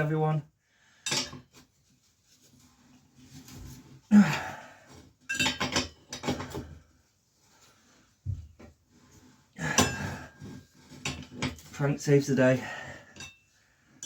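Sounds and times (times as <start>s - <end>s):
metal tools clanking: 5.3s - 6.6s.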